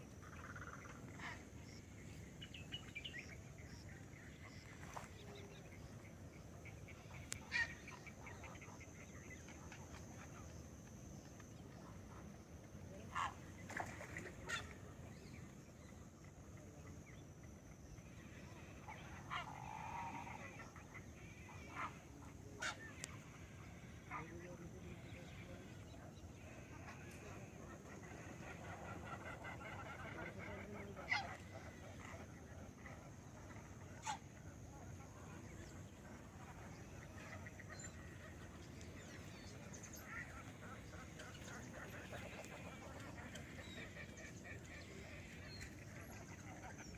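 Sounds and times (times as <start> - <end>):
wetland bird calls: 17.8 - 46.9.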